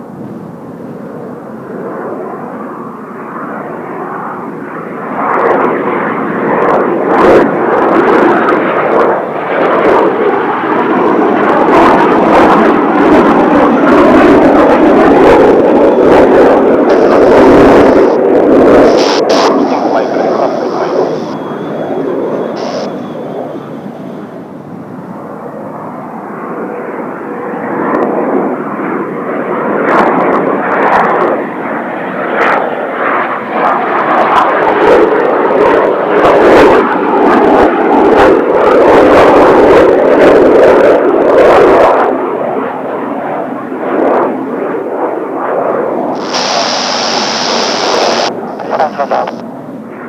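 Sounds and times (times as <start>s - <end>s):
jets flying over: 0.0s - 50.0s
radio hiss: 16.9s - 18.2s, 18.8s - 21.5s, 22.5s - 23.1s, 46.2s - 49.4s.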